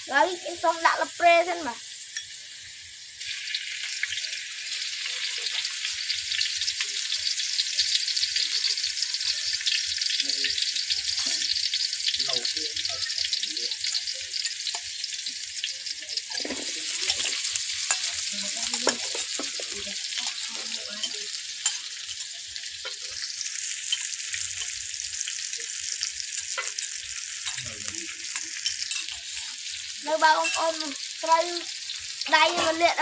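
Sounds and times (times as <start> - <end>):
food sizzling in hot oil: 0.0 - 33.0
utensil stirring in pan: 13.0 - 33.0.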